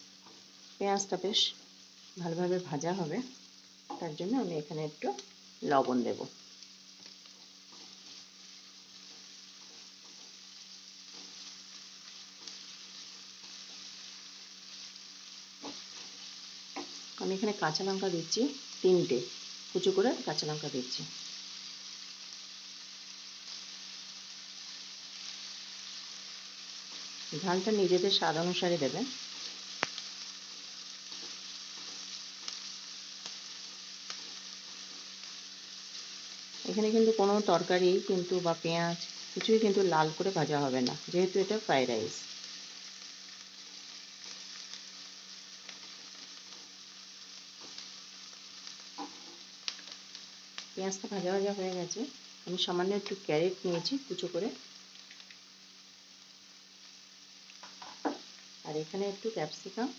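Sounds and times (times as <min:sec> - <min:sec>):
faint crackles: 0:00.0 - 0:59.9
onion sizzling in oil: 0:00.0 - 0:59.9.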